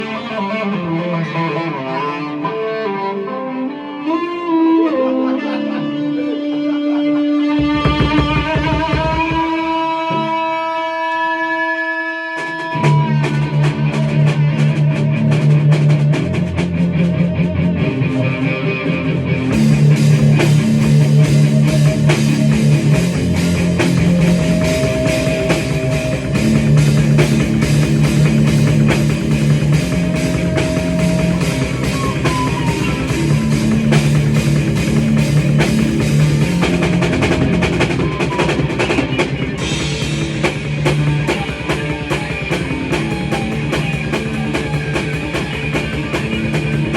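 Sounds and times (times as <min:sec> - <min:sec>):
grunge rock band playing: 0:00.0 - 0:46.9.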